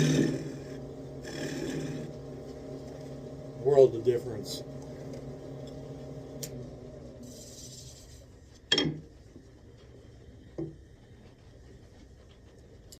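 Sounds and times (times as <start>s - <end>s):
wood lathe motor humming: 0.0s - 7.3s.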